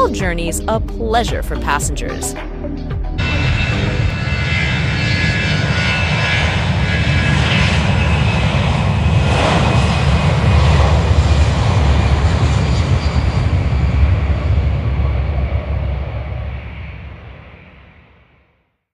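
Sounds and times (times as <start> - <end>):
jet engines rumbling and whining: 3.1 - 18.4.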